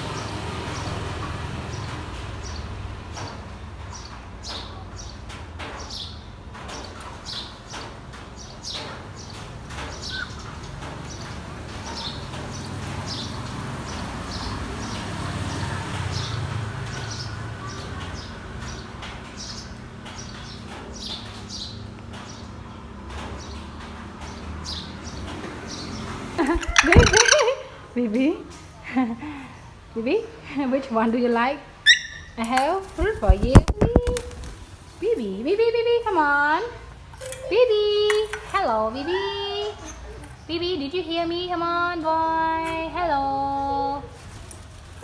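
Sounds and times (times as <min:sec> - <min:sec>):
parrot chirping and clicking: 0:26.4 - 0:27.5, 0:31.9 - 0:34.6.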